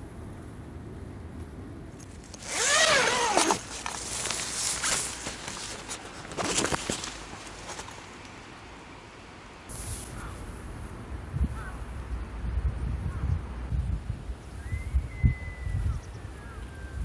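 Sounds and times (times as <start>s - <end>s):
zipper being pulled: 2.0s - 6.8s.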